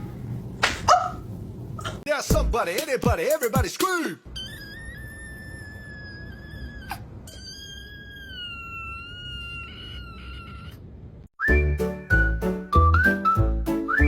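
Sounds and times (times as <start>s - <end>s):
cat crying: 4.3s - 11.0s.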